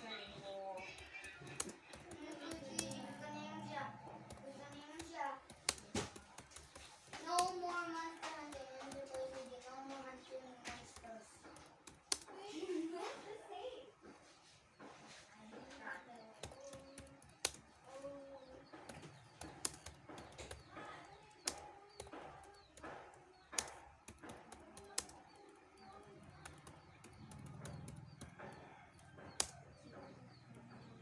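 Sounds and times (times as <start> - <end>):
keyboard key clicks: 0.7 - 9.6, 10.6 - 12.4, 16.4 - 17.8, 18.6 - 30.0.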